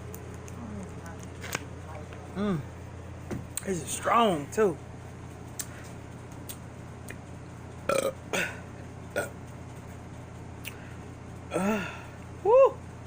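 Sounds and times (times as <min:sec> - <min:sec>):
woman burping: 0:07.9 - 0:08.6, 0:09.2 - 0:09.4.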